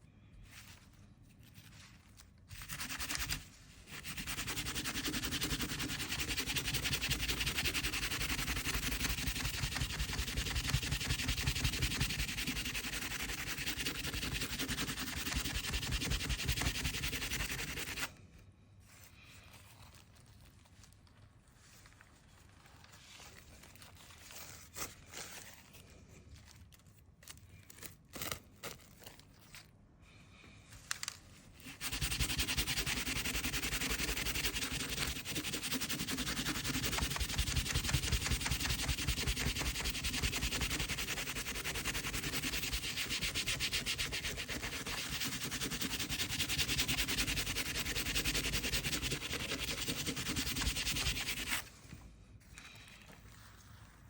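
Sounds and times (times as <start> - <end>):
rubbing against hard surface: 2.6 - 18.1, 31.6 - 51.7.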